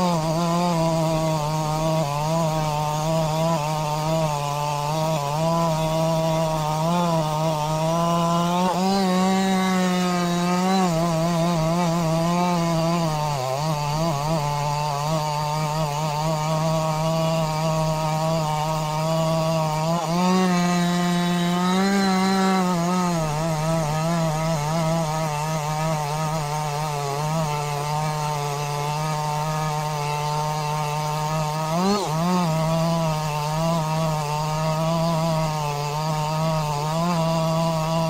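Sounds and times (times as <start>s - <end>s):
chainsaw cutting wood: 0.0s - 38.0s.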